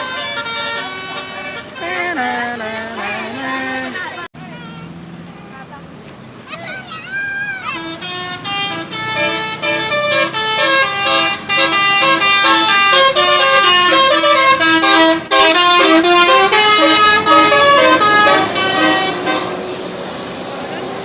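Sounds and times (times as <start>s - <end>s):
musical bus air horn tune: 0.0s - 3.2s, 7.7s - 20.0s.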